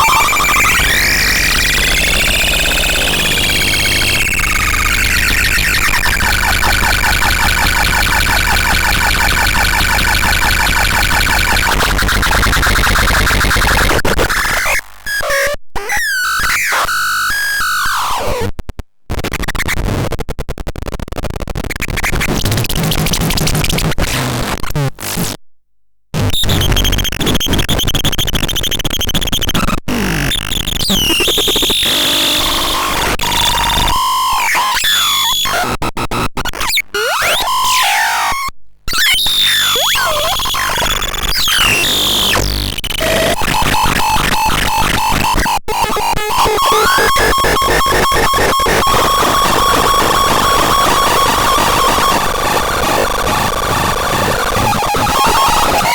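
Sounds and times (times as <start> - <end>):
harsh synthesizer pitch sweeps: 0.0 - 5.9.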